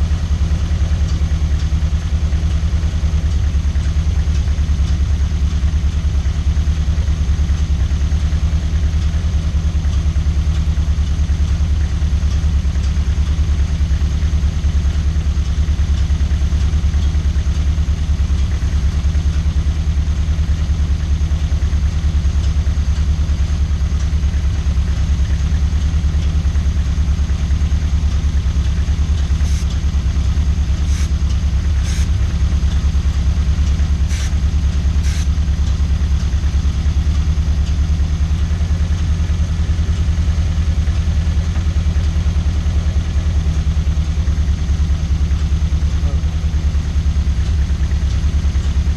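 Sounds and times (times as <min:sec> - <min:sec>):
car engine idling: 0:00.0 - 0:48.9.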